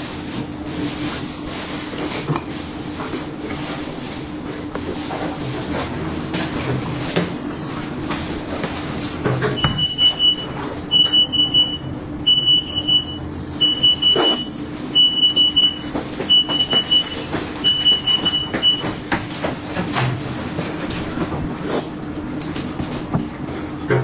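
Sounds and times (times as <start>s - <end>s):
steady low hum: 7.8s - 19.4s
rapid high electronic beeps: 9.6s - 18.8s.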